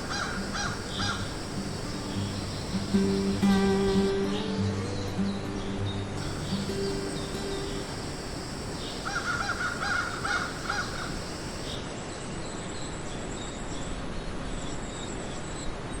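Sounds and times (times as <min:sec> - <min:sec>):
crow cawing: 0:00.0 - 0:03.6, 0:06.2 - 0:11.8
outdoor background hiss: 0:00.0 - 0:12.4.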